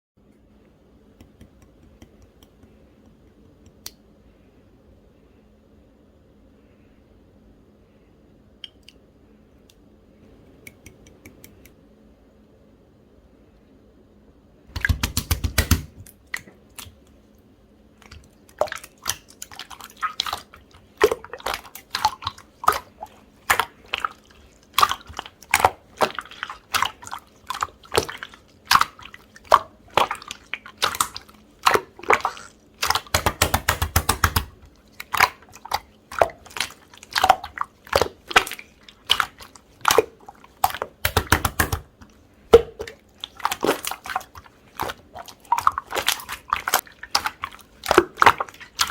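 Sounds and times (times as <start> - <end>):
slime squishing: 17.9 - 48.9
slime clicking and popping: 30.8 - 41.9.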